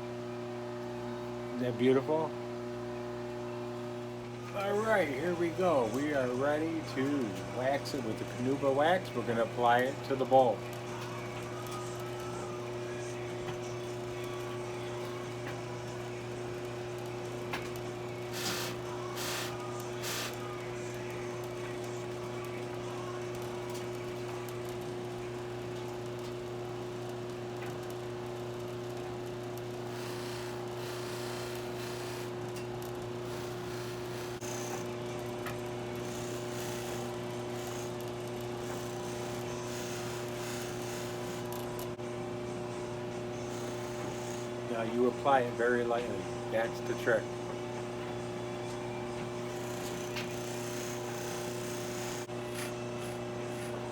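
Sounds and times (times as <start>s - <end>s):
buffing wheel motor humming: 17.7s - 20.6s, 29.8s - 32.4s, 33.2s - 35.0s, 35.6s - 41.9s, 43.3s - 45.2s, 49.2s - 53.9s
hissing rubs against spinning wheel: 18.3s - 20.4s.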